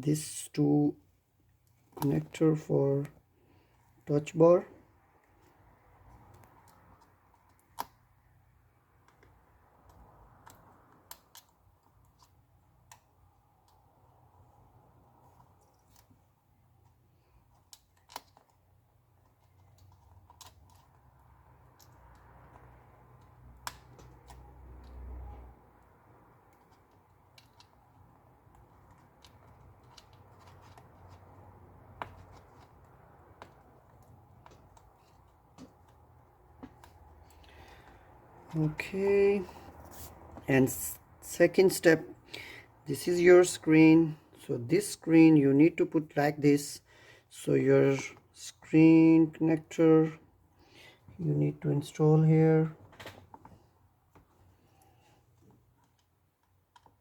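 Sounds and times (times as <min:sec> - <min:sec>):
small parts clicking and tapping: 0:16.8 - 0:38.0.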